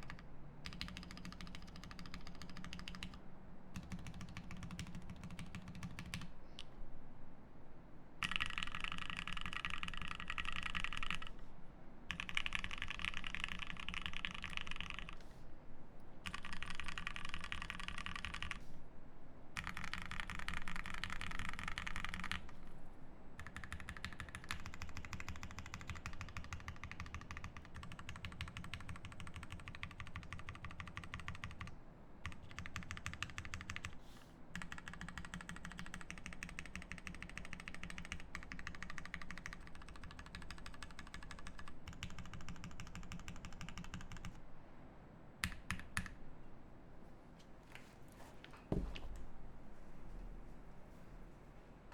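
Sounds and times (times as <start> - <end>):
mechanical keyboard typing: 0.0 - 3.2, 3.8 - 6.3, 8.2 - 11.3, 12.1 - 15.2, 16.2 - 18.6, 19.6 - 22.6, 23.4 - 34.0, 34.6 - 44.4.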